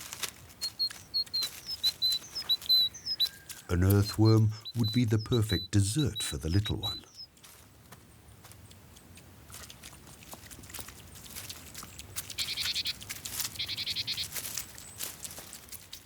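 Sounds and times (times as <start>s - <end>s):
hedgehog chewing: 0.0s - 7.6s, 8.4s - 16.0s.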